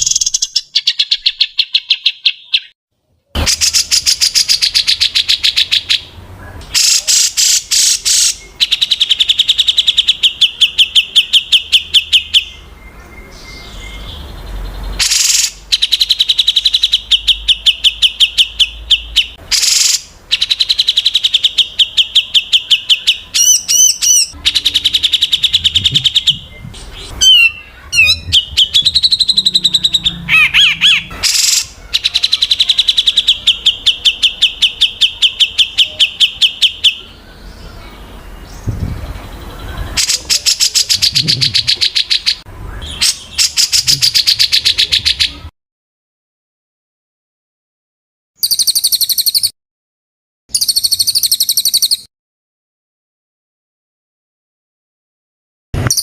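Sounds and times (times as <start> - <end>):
rapid high bird chirps: 0.0 - 2.8, 3.4 - 45.5, 48.4 - 49.5, 50.5 - 52.1, 55.8 - 56.0
gliding whistled bird notes: 22.1 - 34.7.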